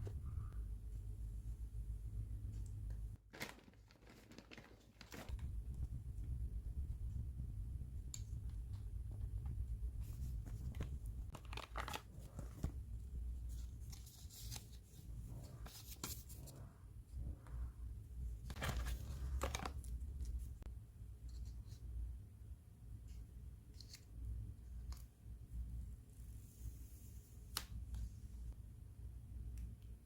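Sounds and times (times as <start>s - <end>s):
steady low hum: 0.0s - 3.2s, 5.3s - 11.4s
packaging tearing and rustling: 3.2s - 5.4s, 11.3s - 12.6s.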